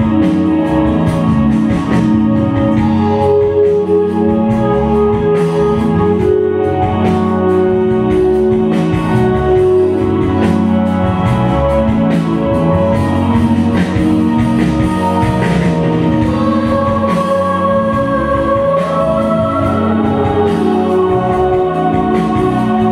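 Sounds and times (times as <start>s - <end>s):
stage music with sustained chords: 0.0s - 22.9s.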